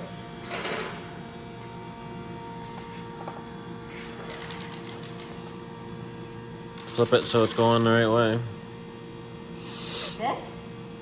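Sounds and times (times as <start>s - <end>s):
electrical hum: 0.0s - 11.0s
socket ratchet clicking: 4.3s - 5.3s, 6.8s - 7.9s.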